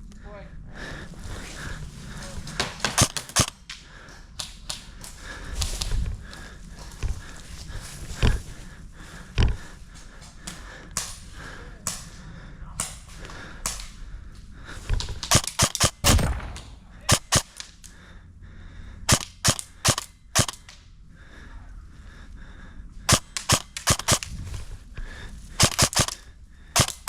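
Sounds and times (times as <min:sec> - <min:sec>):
airsoft guns firing: 0:02.6 - 0:03.8, 0:15.1 - 0:17.8, 0:19.1 - 0:20.8, 0:23.1 - 0:24.3, 0:25.6 - 0:26.2, 0:26.8 - 0:27.0.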